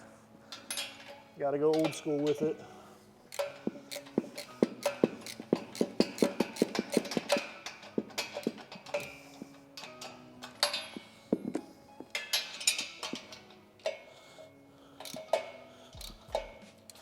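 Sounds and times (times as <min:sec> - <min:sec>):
soft background music: 0:00.0 - 0:17.0
hand ratchet clicking: 0:03.3 - 0:14.1, 0:15.0 - 0:17.0.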